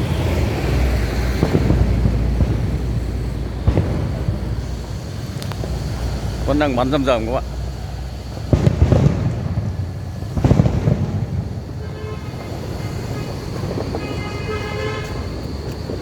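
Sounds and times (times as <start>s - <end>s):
fireworks booming: 0.0s - 16.0s
horn sounding: 11.8s - 15.4s.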